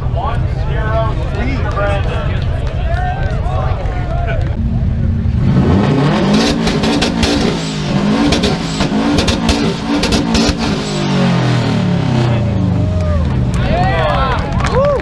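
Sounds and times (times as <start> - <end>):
exhaust pops and crackles: 0.3 - 11.0
car engine revving: 4.6 - 14.6.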